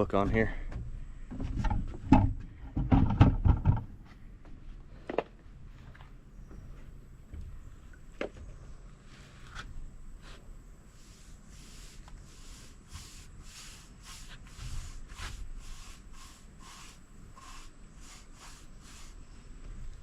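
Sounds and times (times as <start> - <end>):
applicator swishing on wood: 9.4 - 19.3.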